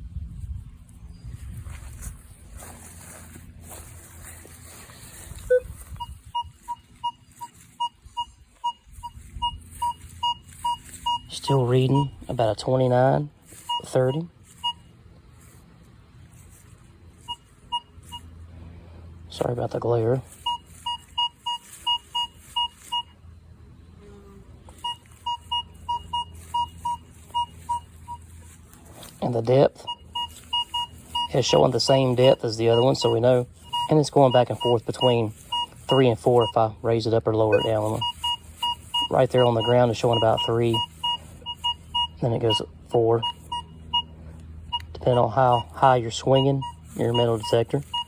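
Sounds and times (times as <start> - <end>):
metal detector low tone: 1.1 - 14.9, 19.4 - 23.2, 24.7 - 48.0
metal detector high beeps: 4.9 - 14.9, 17.2 - 18.3, 19.4 - 23.2, 24.7 - 48.0.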